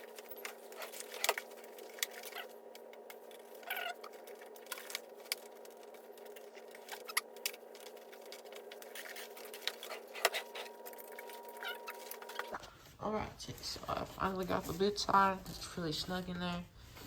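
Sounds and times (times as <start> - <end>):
faint steady hum: 0.0 - 17.0.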